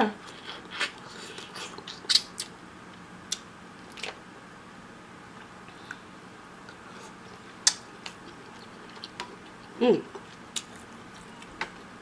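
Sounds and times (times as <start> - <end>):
wet chewing clicks and smacks: 7.6 - 11.9.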